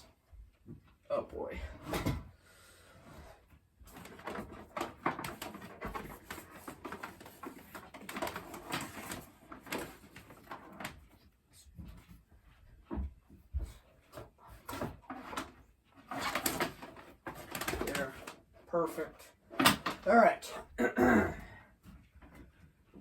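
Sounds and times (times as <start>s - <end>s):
hands rustling wires: 14.2s - 18.5s.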